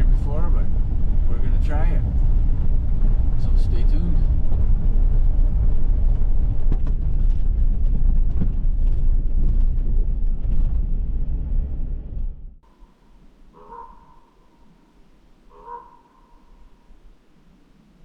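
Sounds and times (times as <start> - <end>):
knocks and rattles over bumps: 0.0 - 12.0
truck engine and tyres rumbling: 0.0 - 18.0.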